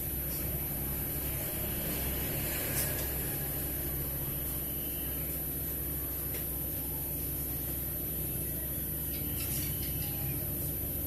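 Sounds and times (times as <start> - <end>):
steady low hum and hiss: 0.0 - 11.0.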